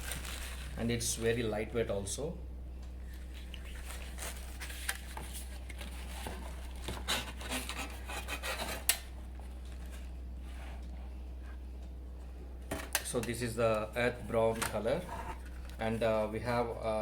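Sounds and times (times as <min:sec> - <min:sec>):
fan blades rubbing and scraping: 0:14.1 - 0:16.1.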